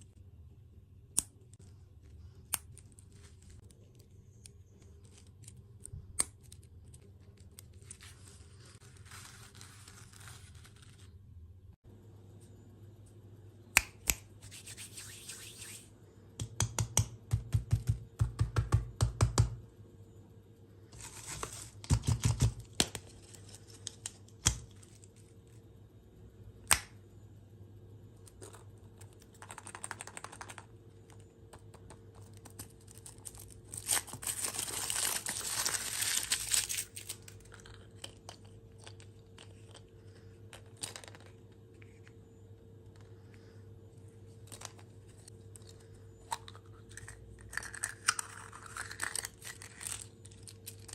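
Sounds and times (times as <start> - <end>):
plastic packaging crinkling: 32.4 - 38.2
plastic tearing: 32.6 - 37.4.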